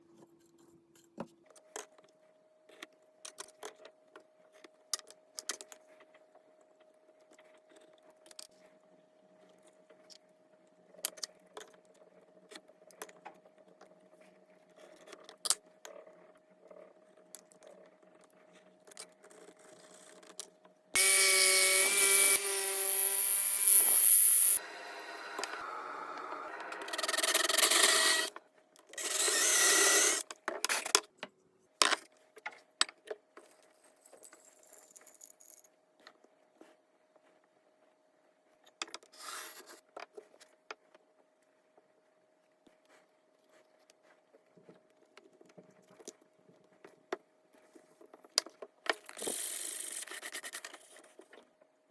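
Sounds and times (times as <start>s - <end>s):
power tool running: 21.0s - 28.3s, 29.0s - 30.2s.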